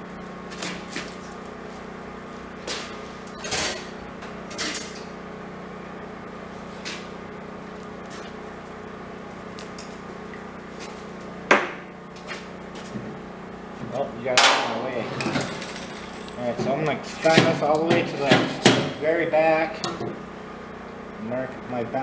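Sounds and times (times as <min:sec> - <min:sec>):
steady low hum: 0:00.0 - 0:22.0
metal tools clinking: 0:03.3 - 0:03.9.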